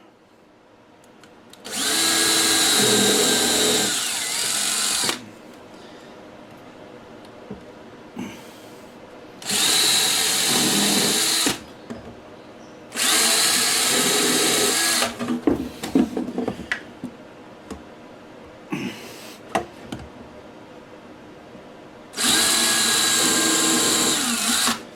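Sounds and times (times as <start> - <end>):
power drill boring into wood: 1.7 - 5.2, 9.4 - 11.6, 13.0 - 15.2, 22.2 - 24.9.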